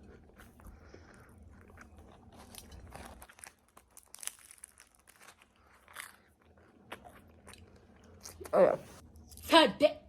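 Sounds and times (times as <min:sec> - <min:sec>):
pastry crackling being torn: 0:01.8 - 0:06.2.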